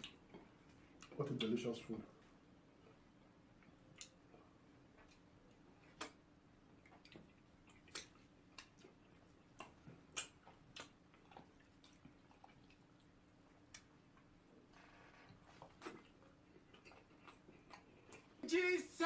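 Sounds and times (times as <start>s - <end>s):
person eating with lip smacking: 3.6s - 6.2s, 6.8s - 14.3s, 15.4s - 18.4s.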